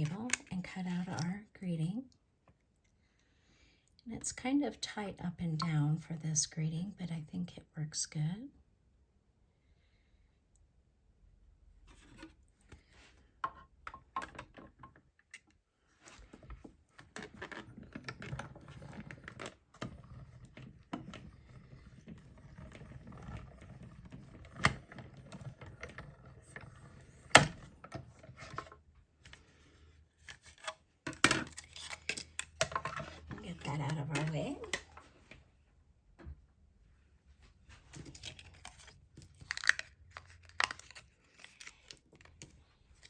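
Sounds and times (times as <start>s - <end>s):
card stock rustling: 37.9s - 43.0s.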